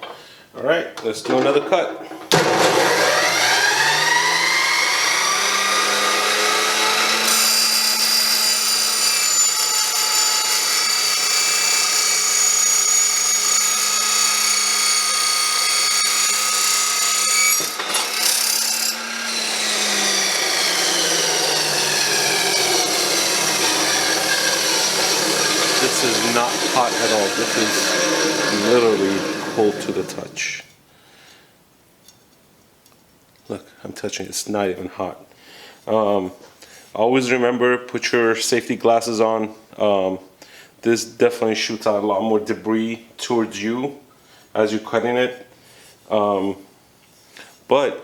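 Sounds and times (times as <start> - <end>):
chop saw motor: 2.3 - 30.4.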